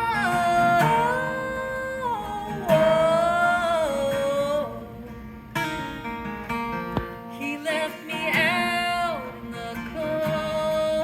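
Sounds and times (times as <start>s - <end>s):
woman singing: 0.0s - 5.1s, 7.3s - 11.0s
acoustic guitar strums: 0.0s - 11.0s.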